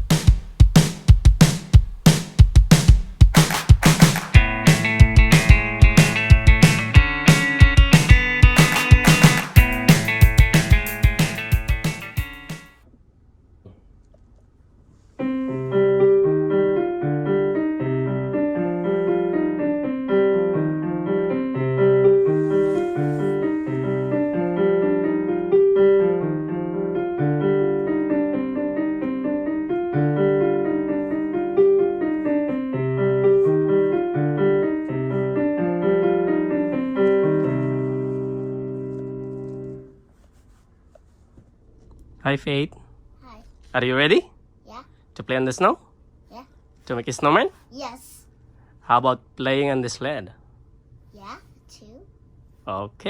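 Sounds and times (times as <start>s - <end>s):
piano melody: 4.2s - 12.7s, 15.2s - 39.9s.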